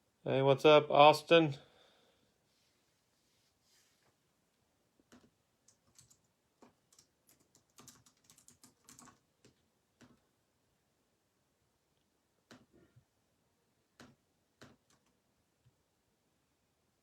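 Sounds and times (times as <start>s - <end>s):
keyboard typing: 5.0s - 10.2s, 14.0s - 15.2s.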